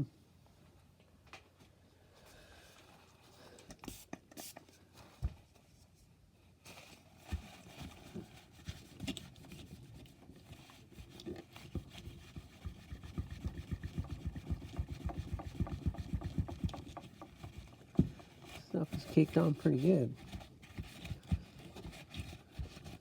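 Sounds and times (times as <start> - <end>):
towel scrubbing metal heatsink: 10.9 - 20.2.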